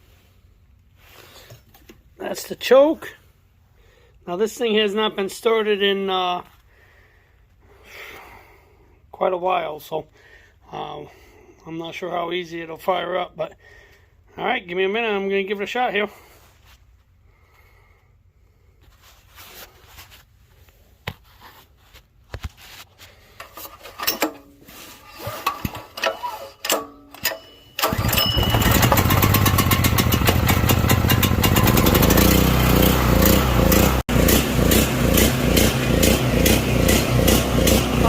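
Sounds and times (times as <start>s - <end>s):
generator engine running: 27.8s - 38.0s.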